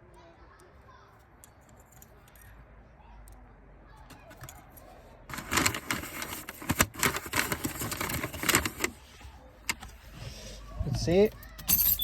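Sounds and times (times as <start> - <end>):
clicking and rattling of hard parts: 4.1 - 9.0.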